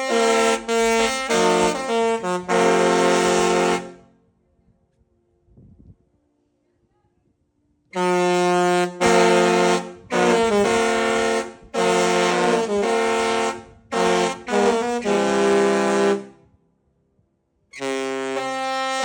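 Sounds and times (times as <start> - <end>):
ship horn playing a tune: 0.0 - 4.2, 8.0 - 16.6, 17.8 - 19.0.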